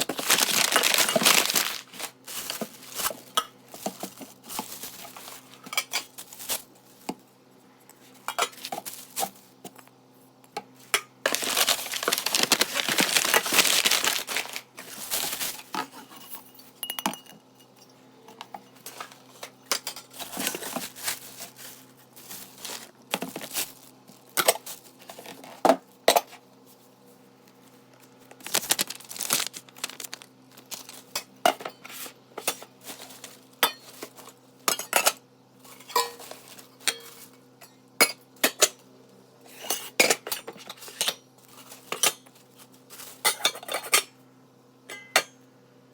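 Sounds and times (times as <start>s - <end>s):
packaging tearing and crinkling: 0.0s - 5.5s, 11.3s - 15.7s, 20.2s - 25.4s, 28.3s - 31.2s
metal pots and lids clinking: 35.8s - 38.7s.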